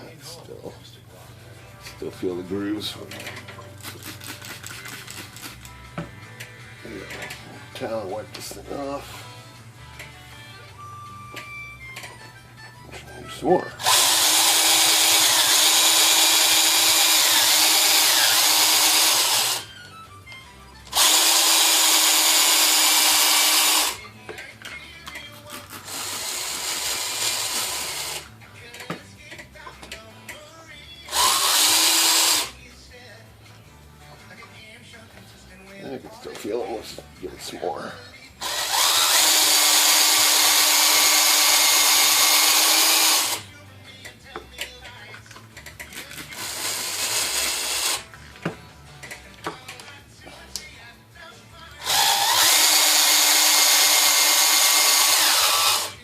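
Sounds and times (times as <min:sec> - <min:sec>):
electric drill motor hum: 0:13.8 - 0:19.7, 0:20.9 - 0:24.0, 0:25.9 - 0:28.3, 0:31.1 - 0:32.5, 0:38.4 - 0:43.4, 0:46.4 - 0:48.0, 0:51.8 - 0:56.0.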